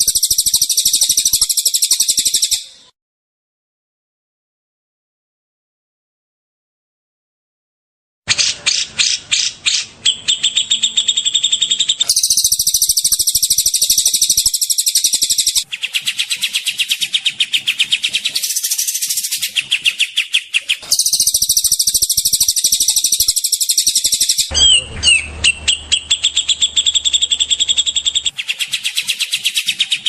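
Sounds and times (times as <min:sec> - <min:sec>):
songbird rapid trilled calls: 0:00.0 - 0:02.7, 0:08.4 - 0:30.0.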